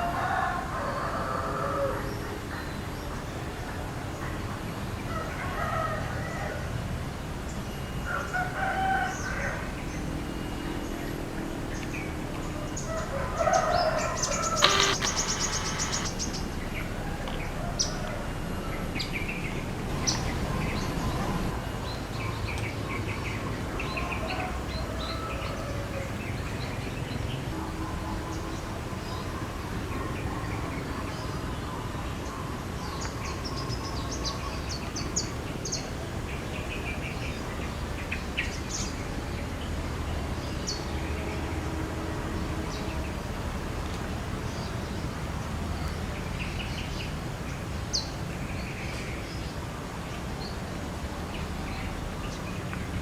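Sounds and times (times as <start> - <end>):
small birds chirping: 14.2 - 16.4.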